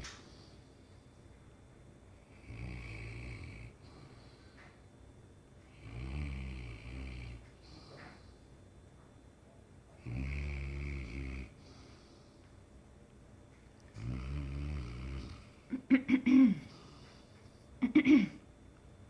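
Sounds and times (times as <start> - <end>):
dog snoring: 2.2 - 4.7, 5.7 - 8.3, 10.0 - 12.0, 13.9 - 15.8.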